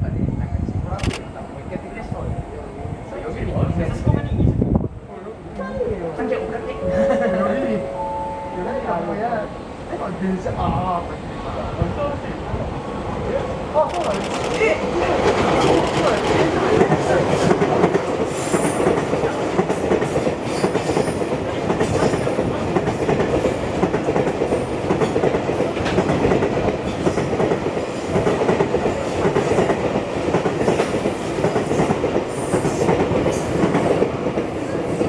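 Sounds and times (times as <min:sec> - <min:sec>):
train wheels rumbling on rail: 0:09.7 - 0:35.0.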